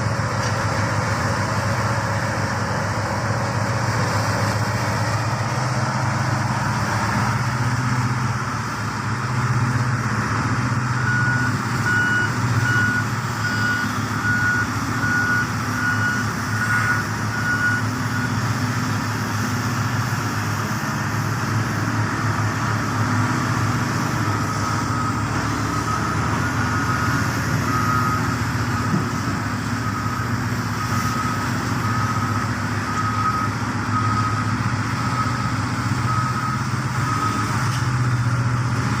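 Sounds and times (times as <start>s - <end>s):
diesel engine running: 0.0s - 39.0s
lower-pitched reversing alarm beeping: 10.9s - 18.4s, 24.2s - 37.6s
reversing alarm beeping: 10.9s - 18.8s, 24.0s - 37.7s.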